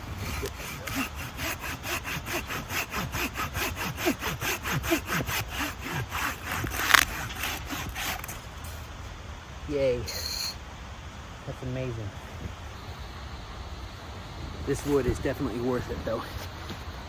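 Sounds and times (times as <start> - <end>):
wood cracking: 0.0 - 8.8
hand saw cutting wood: 0.0 - 8.9.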